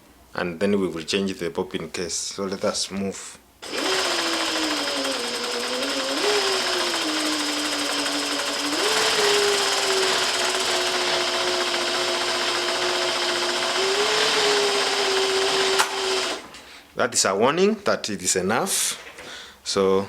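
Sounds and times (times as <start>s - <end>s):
sewing machine running: 3.6s - 16.5s
bobbin winder whine: 3.6s - 16.6s.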